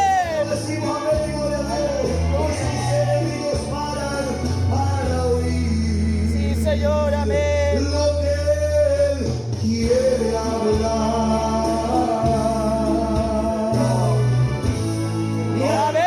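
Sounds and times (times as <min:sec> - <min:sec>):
guitar accompaniment: 0:00.0 - 0:16.0
person singing gospel: 0:00.0 - 0:16.0.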